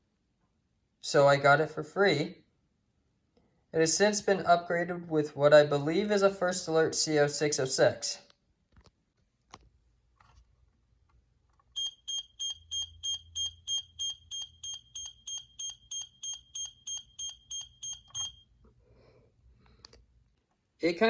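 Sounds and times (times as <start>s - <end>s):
shrill alarm beeps: 11.8s - 18.5s.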